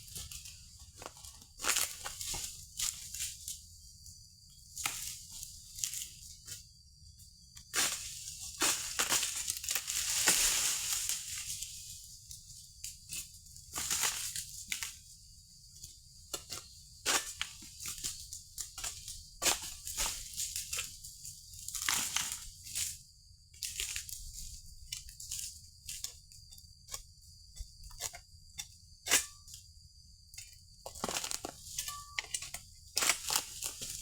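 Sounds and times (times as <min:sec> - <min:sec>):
fronds rustling: 0:08.6 - 0:11.6.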